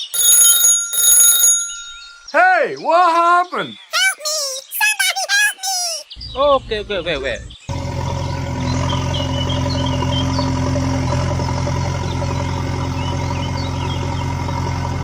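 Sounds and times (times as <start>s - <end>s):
engine idling: 6.3s - 15.0s.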